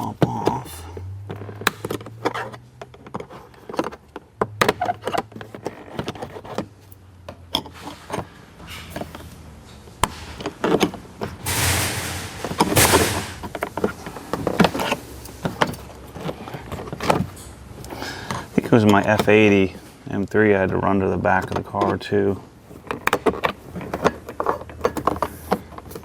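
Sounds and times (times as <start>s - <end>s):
plastic panels clicking and knocking: 1.2s - 7.7s, 10.0s - 17.4s
scraping rustles: 7.6s - 17.5s.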